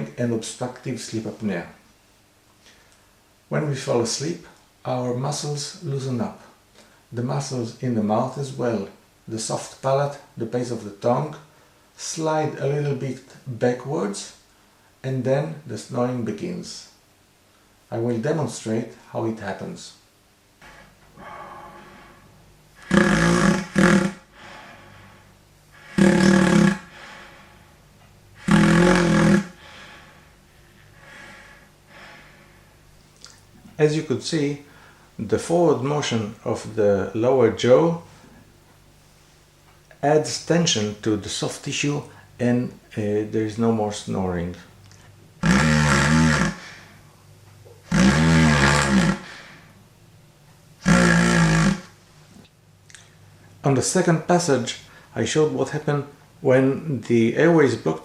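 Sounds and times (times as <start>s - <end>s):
low rattling snores: 20.6s - 32.8s, 45.4s - 46.9s, 47.8s - 49.6s, 50.8s - 51.9s
breathy airflow: 20.6s - 33.8s, 34.5s - 35.3s, 45.0s - 49.9s, 50.8s - 51.9s.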